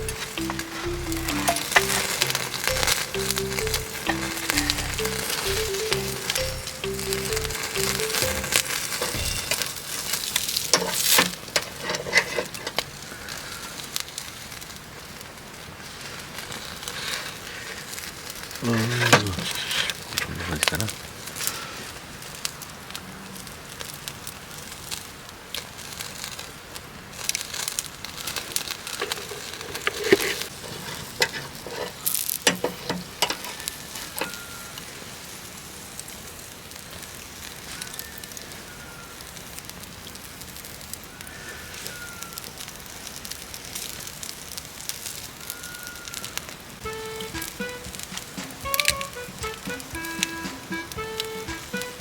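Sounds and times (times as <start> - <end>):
campfire crackling and popping: 0.0 - 52.0
meat sizzling hiss: 23.4 - 46.6.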